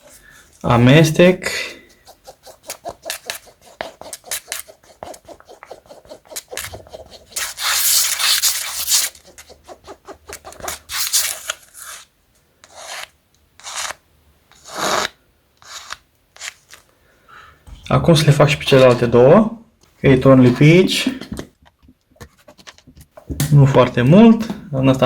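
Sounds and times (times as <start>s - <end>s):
stirrer scraping a cup: 1.8s - 7.7s.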